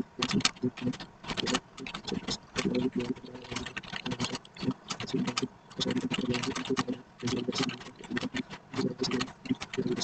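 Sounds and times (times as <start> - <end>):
fast typing on keyboard: 0.0 - 10.0.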